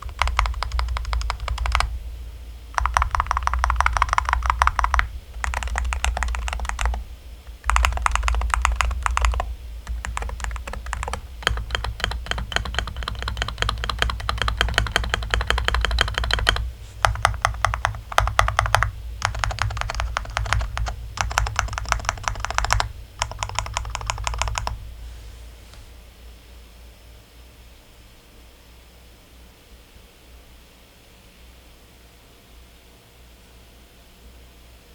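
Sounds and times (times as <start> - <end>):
keyboard keys clacking: 0.0 - 1.9, 2.8 - 24.8.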